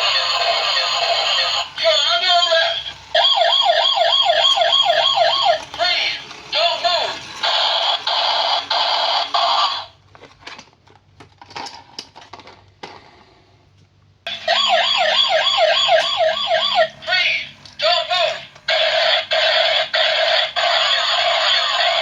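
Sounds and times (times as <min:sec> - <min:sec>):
toy siren warbling: 0:00.0 - 0:09.9, 0:14.3 - 0:22.0.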